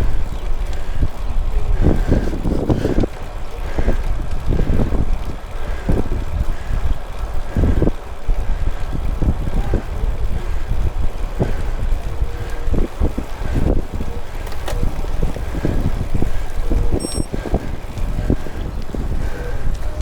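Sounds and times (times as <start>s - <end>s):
person breathing heavily: 0.0s - 7.9s, 9.7s - 14.4s, 15.4s - 19.8s
wind buffeting microphone: 0.0s - 20.0s
high electronic beep: 17.0s - 17.3s.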